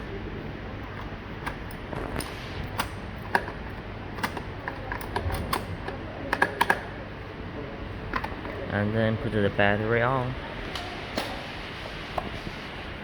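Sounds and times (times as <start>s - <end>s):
door lock parts clicking: 0.9s - 6.9s.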